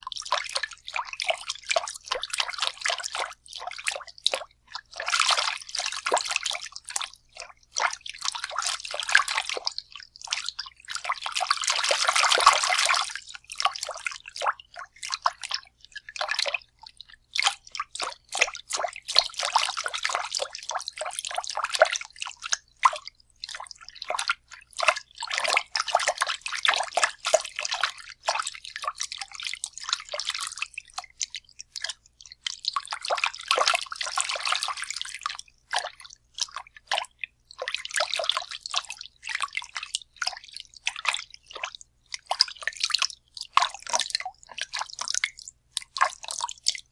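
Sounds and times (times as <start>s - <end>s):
water sloshing by hand: 0.1s - 16.6s.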